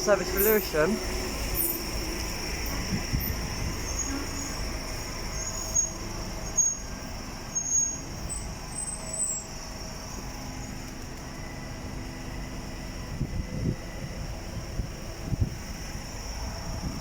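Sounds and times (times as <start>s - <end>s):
train low rumble: 0.0s - 17.0s
short high squeals: 5.2s - 6.9s, 7.5s - 9.6s.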